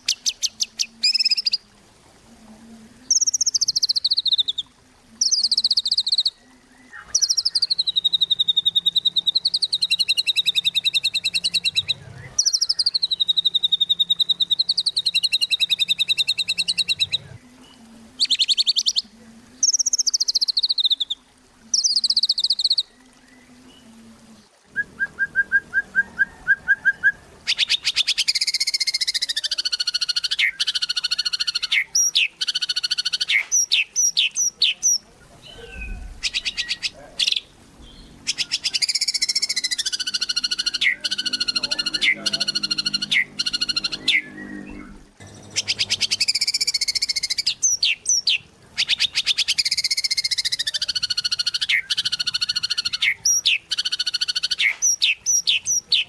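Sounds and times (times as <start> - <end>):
bird singing trills and whistles: 0.0 - 1.6, 3.1 - 23.8, 24.7 - 56.0.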